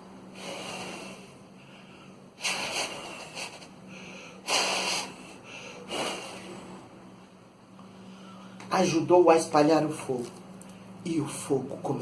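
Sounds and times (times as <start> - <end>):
person blowing hissing breath: 0.3 - 6.9.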